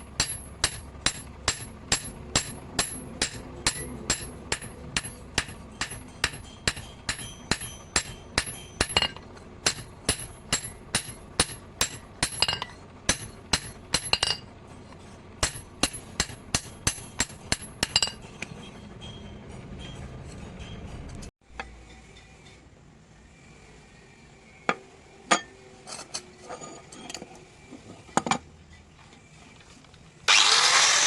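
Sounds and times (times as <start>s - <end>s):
hammer striking steel on anvil: 0.0s - 14.5s, 15.4s - 22.6s.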